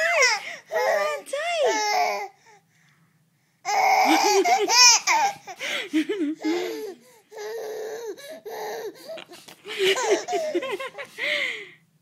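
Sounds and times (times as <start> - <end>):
baby squealing: 3.7 - 5.4
baby laughing: 3.7 - 11.1.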